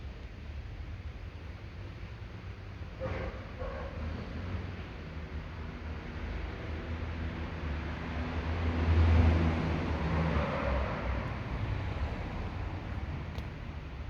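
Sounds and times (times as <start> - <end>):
vehicle engine passing by: 6.8 - 13.6.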